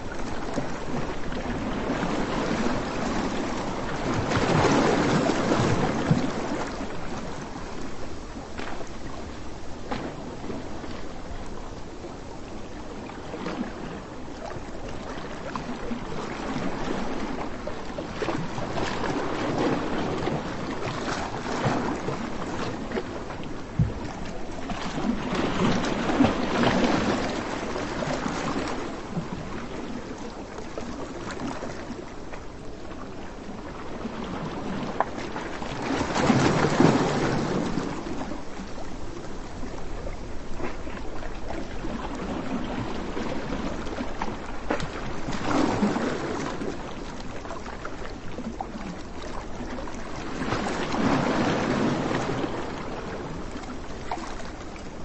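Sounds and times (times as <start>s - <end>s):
surf on a beach: 0.0s - 55.0s.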